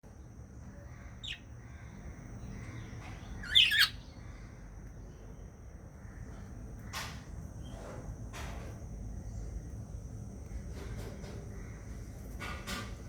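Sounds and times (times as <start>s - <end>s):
budgerigar wavering call: 3.4s - 3.9s.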